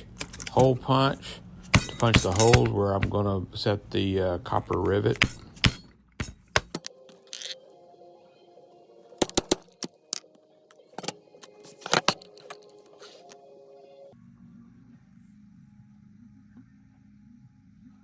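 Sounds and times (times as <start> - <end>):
mallet striking hole punch: 1.7 - 3.3, 4.7 - 6.9, 9.2 - 9.8.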